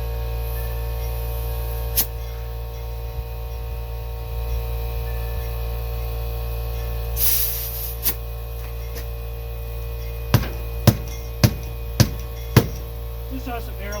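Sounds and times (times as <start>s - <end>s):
air compressor humming: 0.0s - 14.0s
air hissing: 0.3s - 2.5s, 7.2s - 8.3s
rubber mallet knocking on tire: 10.4s - 12.9s.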